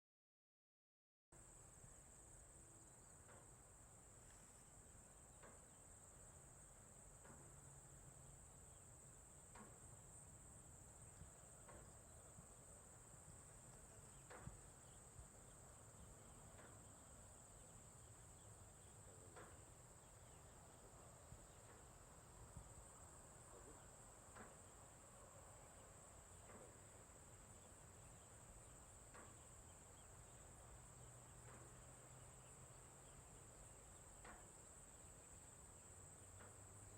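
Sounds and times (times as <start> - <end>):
crickets chirring: 1.4 - 36.9
soft ticks: 3.2 - 3.6, 5.3 - 5.8, 7.2 - 7.8, 9.5 - 10.0, 11.1 - 12.6, 13.3 - 17.0, 17.6 - 21.9, 23.5 - 25.0, 25.7 - 36.9.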